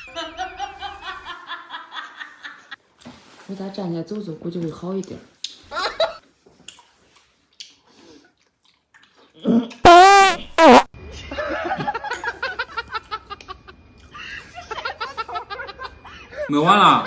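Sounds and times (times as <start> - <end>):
fart sound effect: 9.8 - 11.0.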